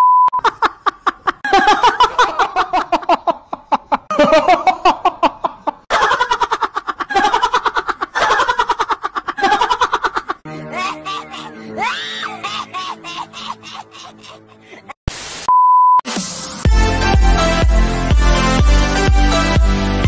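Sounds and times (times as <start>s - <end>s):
short beep: 0.0s - 0.4s, 15.5s - 16.0s.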